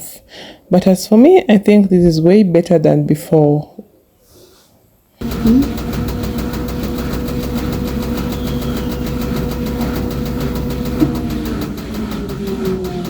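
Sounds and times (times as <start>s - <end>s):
washing machine spinning: 5.2s - 13.0s.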